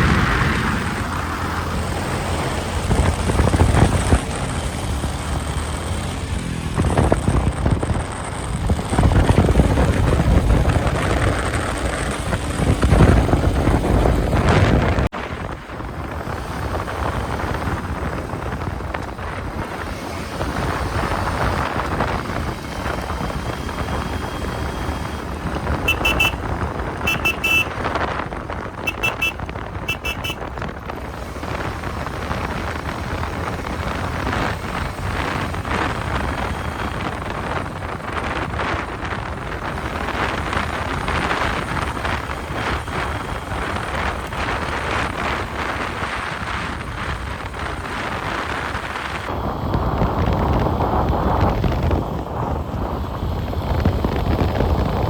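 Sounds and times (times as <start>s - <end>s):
motorcycle engine running: 0.0s - 55.0s
wind noise on microphone: 0.0s - 55.0s
horn beeps: 23.4s - 28.0s, 28.8s - 30.7s.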